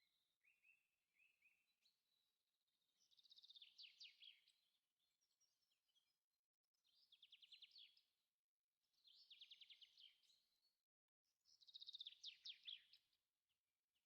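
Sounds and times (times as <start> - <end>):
small bird singing: 0.0 - 6.2, 6.8 - 8.2, 8.9 - 13.2.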